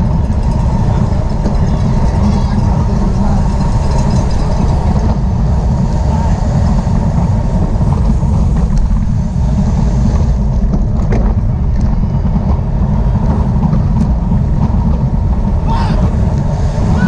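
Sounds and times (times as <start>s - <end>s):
wind rumble on microphone: 0.0s - 17.0s.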